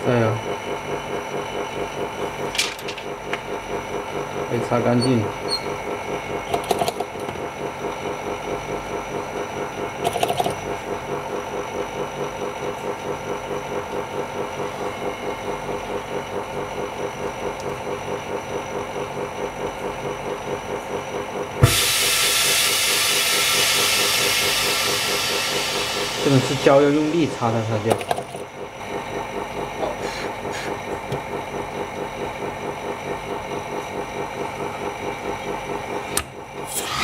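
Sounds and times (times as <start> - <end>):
electric vacuum pump humming: 0.0 - 37.0
loud hiss of air: 21.6 - 26.7.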